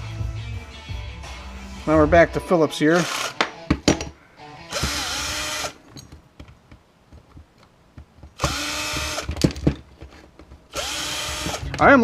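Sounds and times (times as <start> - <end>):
power drill motor whining: 3.0 - 3.4, 4.7 - 5.8, 8.4 - 9.4, 10.7 - 11.8.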